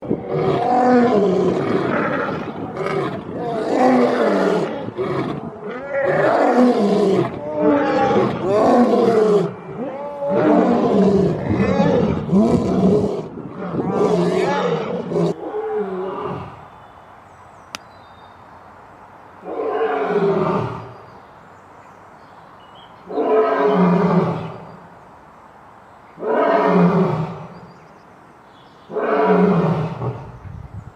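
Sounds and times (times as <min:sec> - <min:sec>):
lion roaring: 0:00.1 - 0:16.5.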